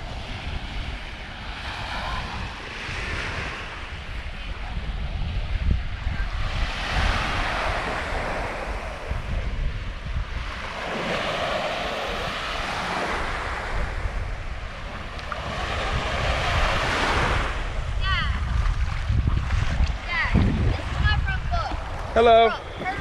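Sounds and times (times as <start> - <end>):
surf waves washing on beach: 0.0 - 23.0
wind rumbling on microphone: 0.0 - 23.0.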